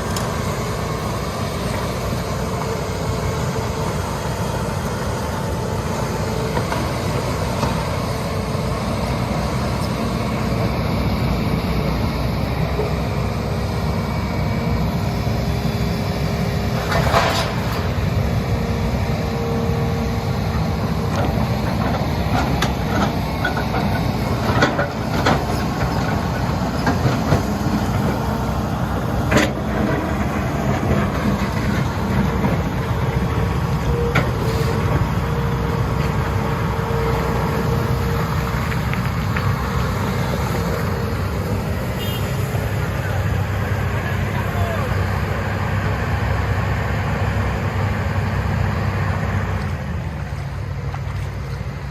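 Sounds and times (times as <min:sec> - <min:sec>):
hydraulic whine: 0:00.0 - 0:45.3
excavator diesel engine running: 0:00.0 - 0:51.9.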